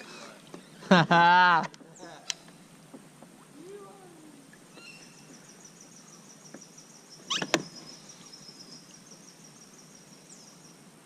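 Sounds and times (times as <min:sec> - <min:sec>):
insect chirping: 0:04.7 - 0:11.0.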